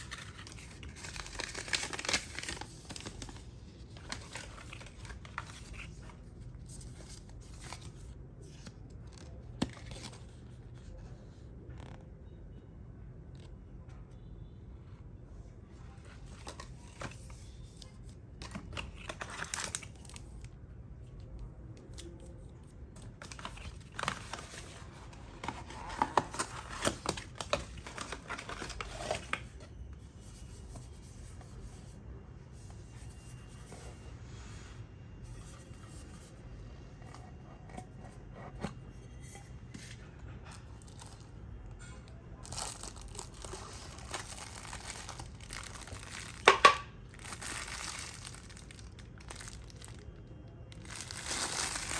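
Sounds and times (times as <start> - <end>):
packaging crinkling and tearing: 0.0 - 6.1, 16.4 - 20.6, 23.0 - 29.7, 42.4 - 51.9.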